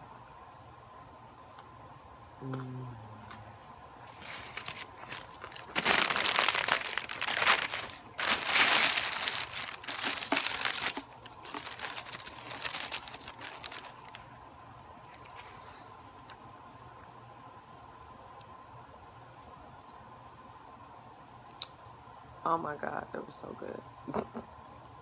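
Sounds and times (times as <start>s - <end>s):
food wrapper crinkling: 4.0s - 14.3s.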